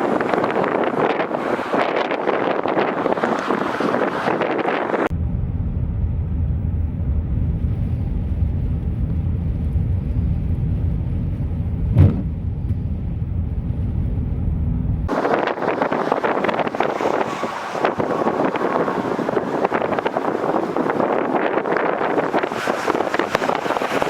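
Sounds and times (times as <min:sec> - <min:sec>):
vehicle rumbling: 0:00.0 - 0:24.0
brief knock: 0:11.9 - 0:12.8.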